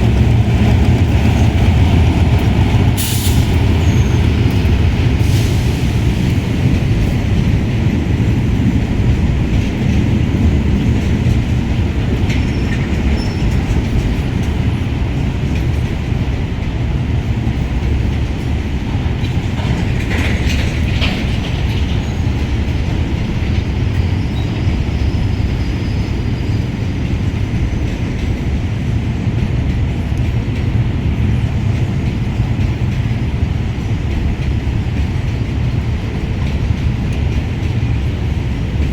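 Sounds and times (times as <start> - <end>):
freight train rumble: 0.0 - 38.9
train wheel screech: 0.7 - 6.9, 12.3 - 14.4.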